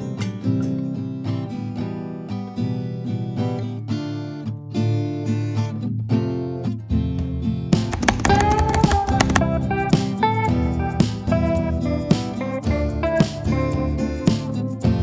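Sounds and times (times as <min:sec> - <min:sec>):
acid jazz with guitar and bass: 0:10.4 - 0:15.0.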